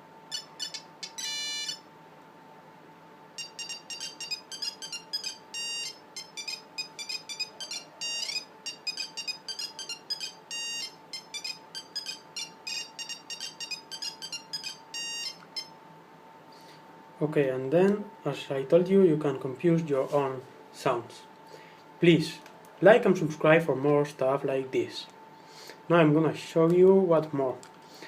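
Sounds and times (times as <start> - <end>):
monophonic phone ringtone: 0.3 - 1.8, 3.4 - 15.8.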